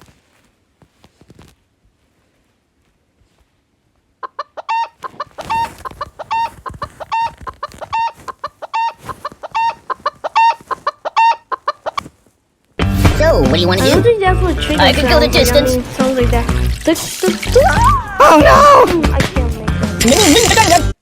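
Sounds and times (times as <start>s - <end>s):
chicken clucking: 4.2s - 12.1s.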